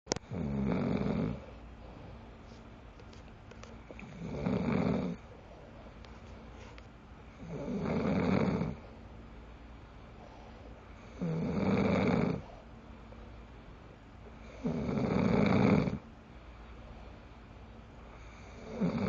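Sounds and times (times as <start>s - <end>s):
man snoring: 0.2s - 1.5s, 3.9s - 5.2s, 7.4s - 8.8s, 11.0s - 12.5s, 14.4s - 16.0s, 18.2s - 19.0s.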